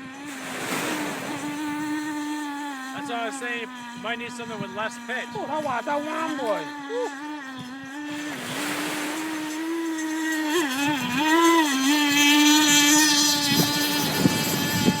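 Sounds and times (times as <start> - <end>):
model boat motor whining: 0.0 - 15.0
water hiss: 0.3 - 3.3, 8.1 - 10.8.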